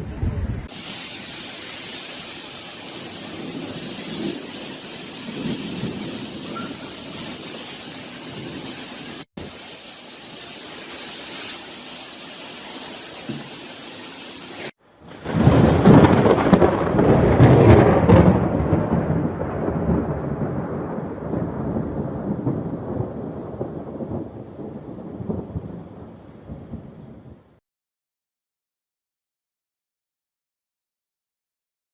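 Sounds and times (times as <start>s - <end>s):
steady rushing hiss: 0.7s - 14.8s
rolling thunder: 2.6s - 9.3s, 15.0s - 27.6s.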